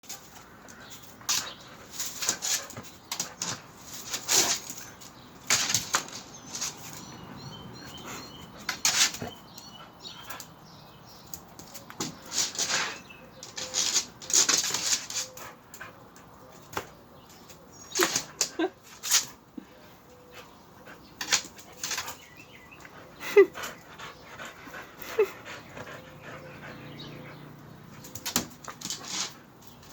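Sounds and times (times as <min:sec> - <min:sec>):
dog scuffling: 0:00.0 - 0:10.5, 0:11.1 - 0:19.4, 0:20.9 - 0:22.9, 0:27.9 - 0:29.9.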